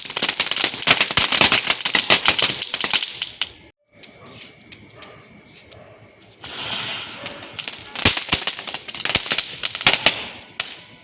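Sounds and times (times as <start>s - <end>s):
firework pops and cracks: 0.0s - 3.6s, 6.4s - 11.0s
firework hissing: 6.4s - 10.5s.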